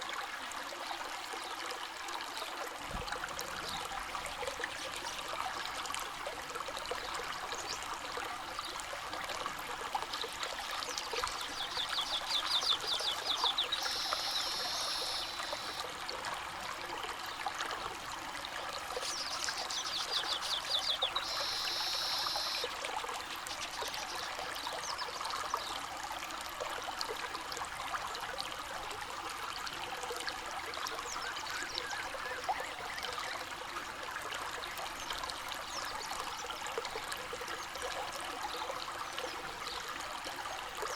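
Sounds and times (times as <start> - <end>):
river water flowing over stones: 0.0 - 40.9
bird singing with buzzy trill: 19.0 - 22.6.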